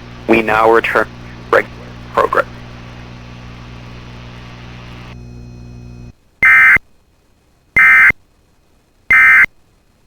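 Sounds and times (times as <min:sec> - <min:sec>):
buzzy digital data tones: 0:00.0 - 0:06.8, 0:07.8 - 0:08.1, 0:09.1 - 0:09.5
steady hum: 0:00.0 - 0:08.2.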